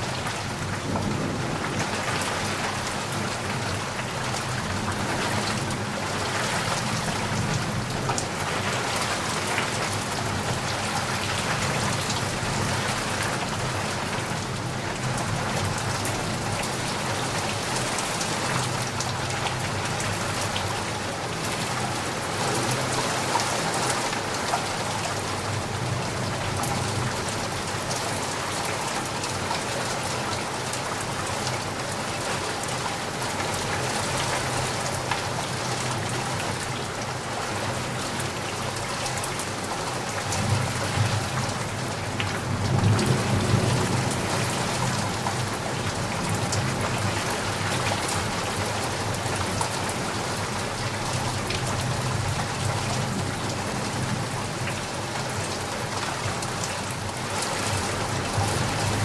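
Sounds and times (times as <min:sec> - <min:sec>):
low rumble of thunder: 0:00.0 - 0:08.0, 0:40.2 - 0:47.3
steady rain falling: 0:00.0 - 0:59.0.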